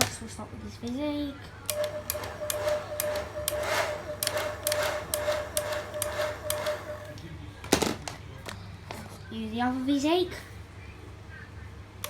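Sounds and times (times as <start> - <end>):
hair dryer motor whine: 1.7 - 7.2.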